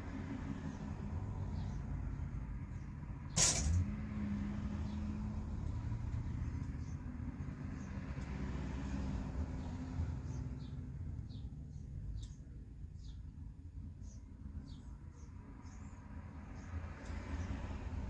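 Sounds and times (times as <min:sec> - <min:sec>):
sharp short hiss: 0:03.4 - 0:03.8.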